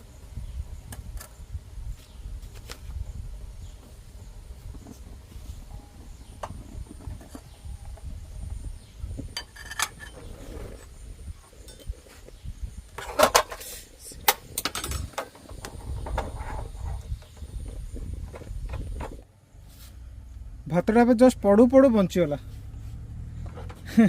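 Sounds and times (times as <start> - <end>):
metal pot and utensils clinking: 9.4 - 10.2, 11.6 - 12.1, 14.6 - 15.2.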